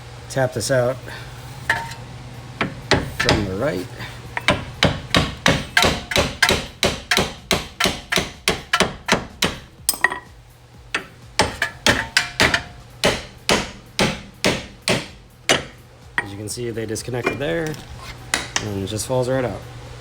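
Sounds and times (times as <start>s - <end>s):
hammer blows on metal: 2.6s - 16.4s.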